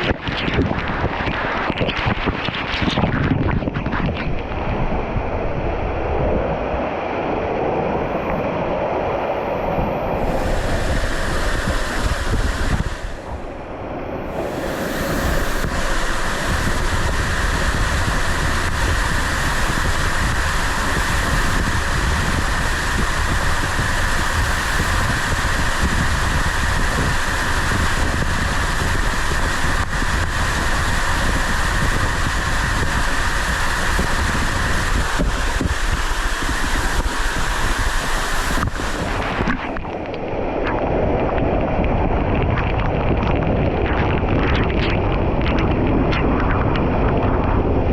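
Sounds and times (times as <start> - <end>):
wind rumble on microphone: 0.0 - 47.9
waterfall rushing: 8.5 - 40.2.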